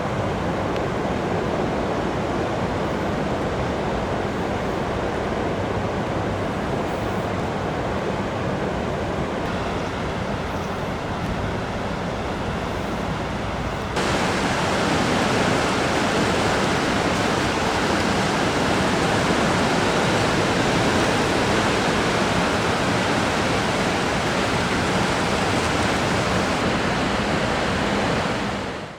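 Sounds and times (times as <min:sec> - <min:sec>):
river water rushing at a dam: 0:13.6 - 0:28.9.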